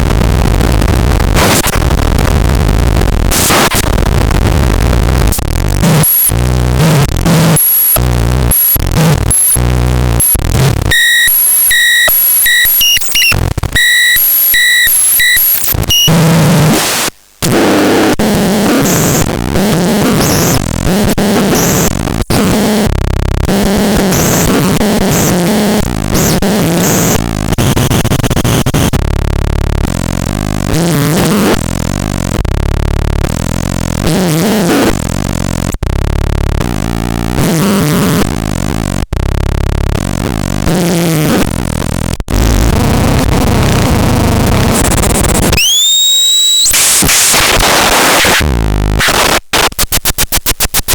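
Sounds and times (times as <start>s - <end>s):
chopped bursts of distorted noise: 0.0s - 50.9s
continuous wall of distorted noise: 0.0s - 50.9s
stuttering high-pitched beeps: 5.9s - 6.4s, 7.3s - 9.6s, 10.2s - 16.2s, 44.7s - 48.4s.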